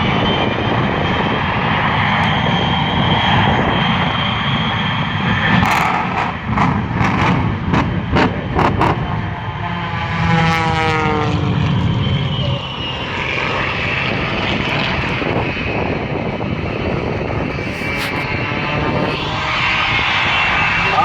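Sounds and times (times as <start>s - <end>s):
propeller plane engine: 0.0s - 21.0s.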